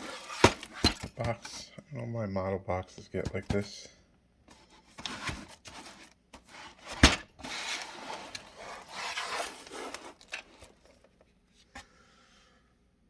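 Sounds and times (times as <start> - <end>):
cardboard box rubbing and scraping: 4.6 - 10.8.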